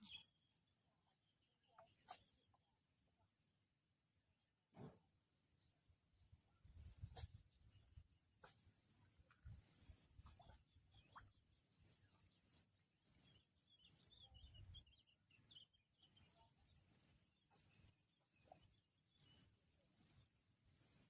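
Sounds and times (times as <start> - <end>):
faint bird twittering: 6.6 - 12.6.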